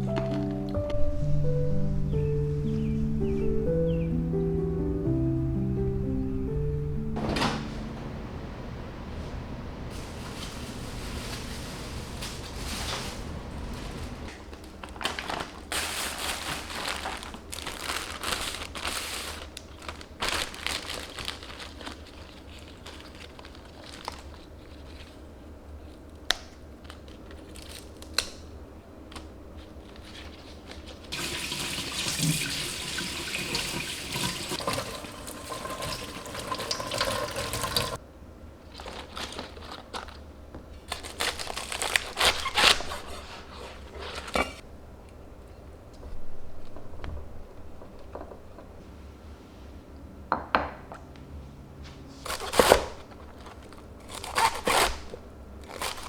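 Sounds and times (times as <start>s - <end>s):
tap water running into sink: 31.1s - 38.0s.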